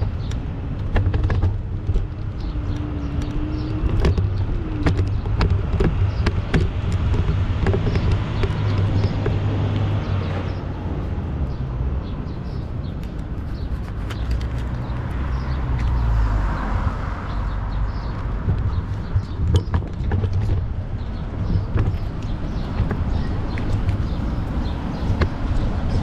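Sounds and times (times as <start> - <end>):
bicycle clicks and knocks: 0.0 - 10.4, 12.8 - 16.0, 17.9 - 26.0
low rumble of traffic: 0.0 - 26.0.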